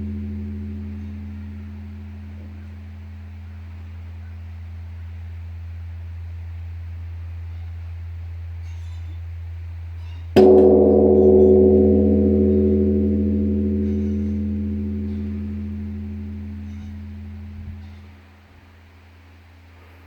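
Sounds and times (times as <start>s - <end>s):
temple bell ringing: 0.0s - 4.4s, 10.4s - 18.2s
steady low hum: 0.0s - 20.0s.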